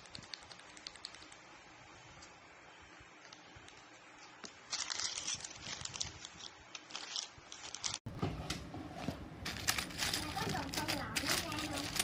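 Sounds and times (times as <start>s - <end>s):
plastic packaging crinkling: 4.4s - 8.1s, 9.4s - 12.0s.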